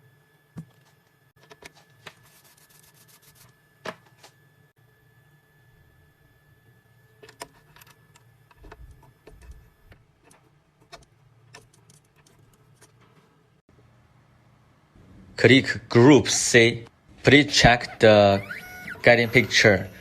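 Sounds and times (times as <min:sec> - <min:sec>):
low hum: 0:13.7 - 0:20.0.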